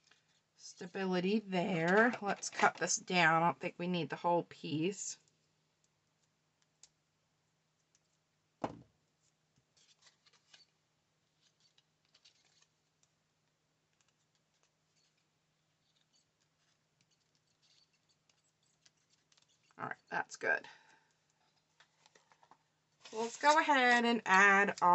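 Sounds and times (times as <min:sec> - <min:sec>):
thump: 0:08.6 - 0:08.9
paper rustling: 0:09.2 - 0:10.7, 0:11.3 - 0:12.9, 0:14.0 - 0:19.7, 0:21.6 - 0:23.9.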